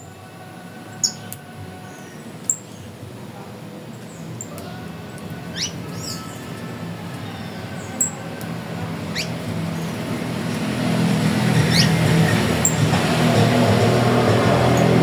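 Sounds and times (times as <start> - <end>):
wild birds calling: 0.0 - 15.0
high bird chirps: 9.1 - 10.0, 11.5 - 12.8.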